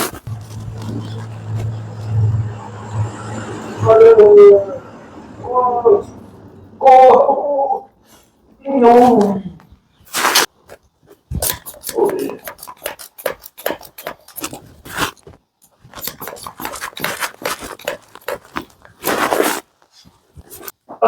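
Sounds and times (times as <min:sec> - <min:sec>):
loud rush of noise: 0:00.3 - 0:07.1.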